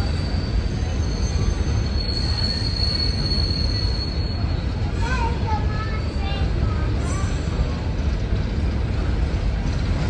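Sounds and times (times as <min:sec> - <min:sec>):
wheels squealing on rail: 0:00.0 - 0:06.3, 0:06.9 - 0:07.8
train rolling rumble: 0:00.0 - 0:10.0.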